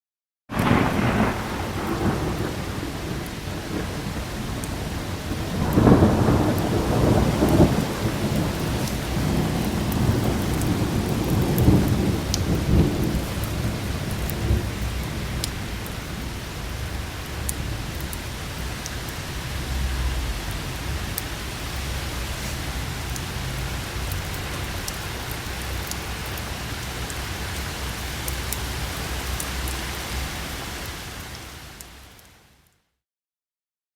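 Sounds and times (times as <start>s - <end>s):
thunder rumbling: 0.5s - 27.5s
steady rain: 0.5s - 32.9s
raindrops ticking: 0.6s - 30.0s.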